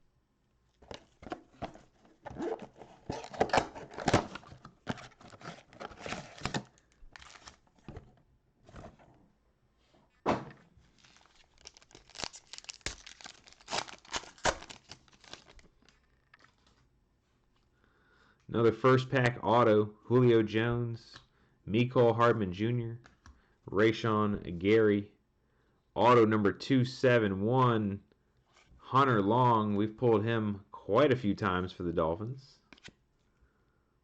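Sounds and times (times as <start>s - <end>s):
plastic wrapping crinkling and tearing: 2.3s - 7.8s, 10.8s - 16.8s
cardboard box thunks: 10.2s - 10.6s.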